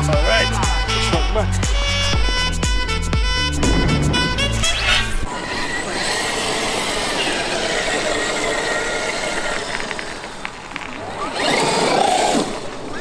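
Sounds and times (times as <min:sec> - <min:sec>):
steady rushing noise: 0:03.4 - 0:10.6
electric motor whine: 0:03.4 - 0:13.0.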